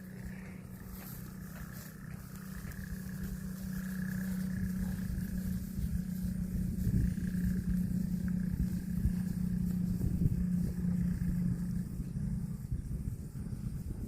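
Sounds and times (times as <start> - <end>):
steady motor hum: 0.0 - 14.0.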